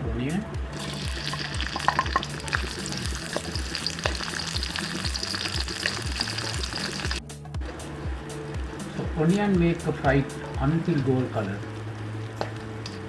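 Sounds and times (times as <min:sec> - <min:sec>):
background music beat: 0:00.0 - 0:13.0
onion sizzling in oil: 0:00.8 - 0:07.2.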